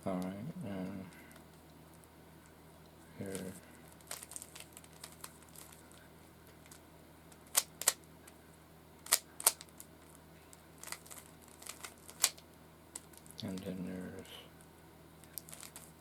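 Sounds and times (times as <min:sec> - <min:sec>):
puzzle cube plastic clicks: 0:07.4 - 0:08.0, 0:09.0 - 0:09.8, 0:10.8 - 0:12.4.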